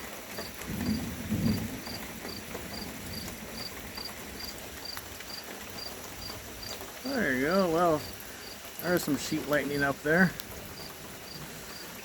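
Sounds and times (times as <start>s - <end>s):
rain hiss: 0.0s - 12.0s
cricket chirping: 0.9s - 5.9s, 8.0s - 8.6s.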